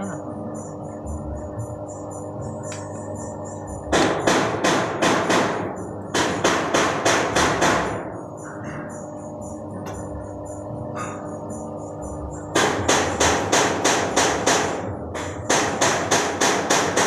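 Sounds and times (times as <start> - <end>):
machine humming: 0.0 - 17.0
sharp hammer-like knocks: 3.9 - 8.1, 12.5 - 17.0.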